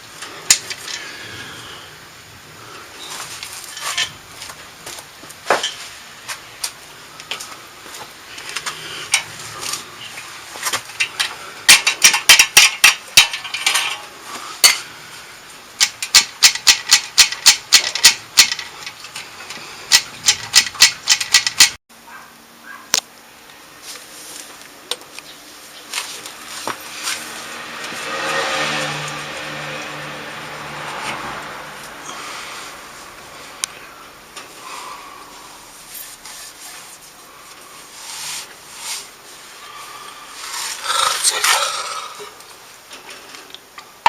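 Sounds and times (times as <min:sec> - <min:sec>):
metal rubbing and clinking: 0:03.0 - 0:04.6, 0:08.3 - 0:15.0, 0:15.8 - 0:21.8, 0:35.6 - 0:43.4
rapid metallic knocks and clanks: 0:11.0 - 0:14.0, 0:15.8 - 0:19.2, 0:19.9 - 0:21.8.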